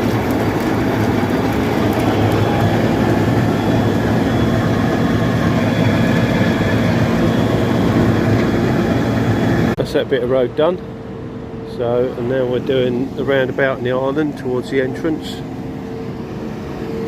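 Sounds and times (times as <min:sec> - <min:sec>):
road planer milling asphalt: 0:00.0 - 0:11.0.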